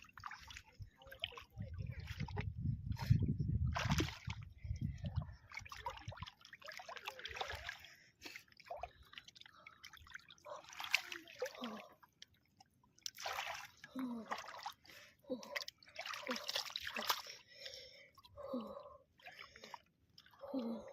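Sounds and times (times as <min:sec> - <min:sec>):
river water splashing: 0:09.9 - 0:11.9, 0:13.0 - 0:14.8, 0:15.9 - 0:17.4.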